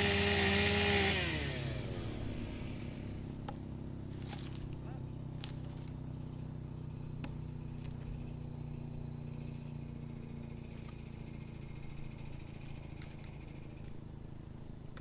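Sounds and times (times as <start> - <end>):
wood chipper engine running: 0.0 - 15.0.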